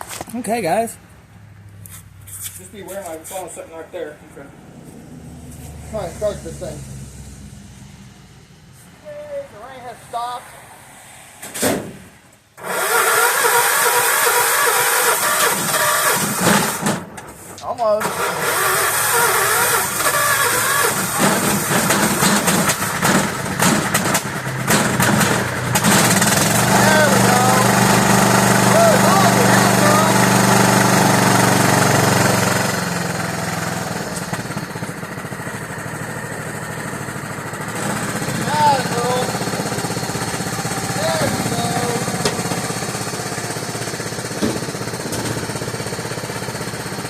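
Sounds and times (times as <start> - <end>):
engine cranking whirr: 12.6 - 47.0
starter thump: 41.2 - 43.1, 43.9 - 45.7.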